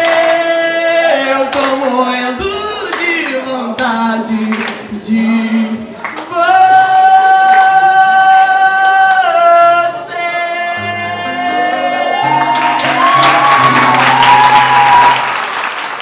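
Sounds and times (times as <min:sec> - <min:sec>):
musical accompaniment: 0:10.6 - 0:15.6.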